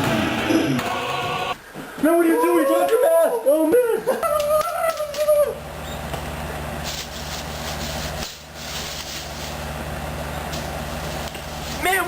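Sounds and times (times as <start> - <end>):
low engine hum with hiss: 4.9 - 12.0.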